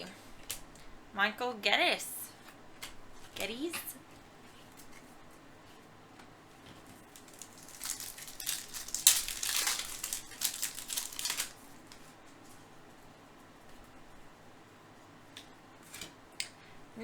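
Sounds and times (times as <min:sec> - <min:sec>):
plastic packaging crinkling: 0:06.8 - 0:12.6.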